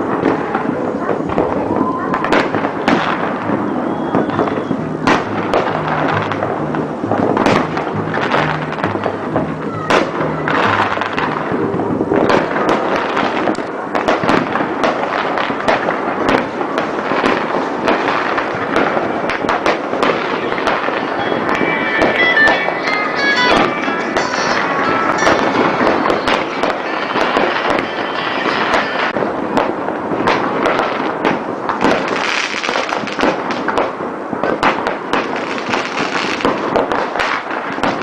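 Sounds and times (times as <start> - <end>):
fireworks bangs and crackling: 0.0 - 38.0
music with low bassline: 4.4 - 12.2, 20.3 - 29.1.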